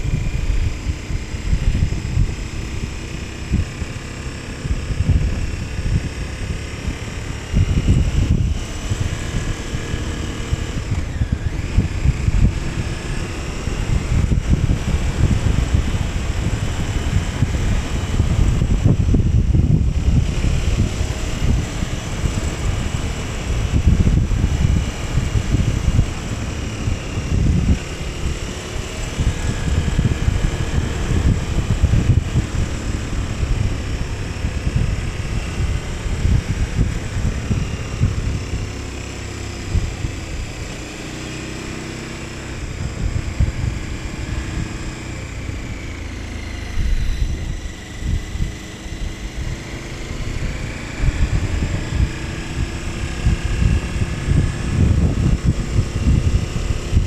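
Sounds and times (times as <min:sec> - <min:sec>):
motorcycle engine running: 0:00.0 - 0:57.0
wind buffeting microphone: 0:00.0 - 0:57.0.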